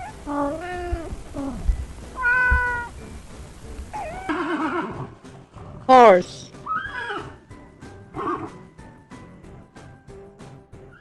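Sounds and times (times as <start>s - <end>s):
kittens meowing: 0.0s - 2.9s.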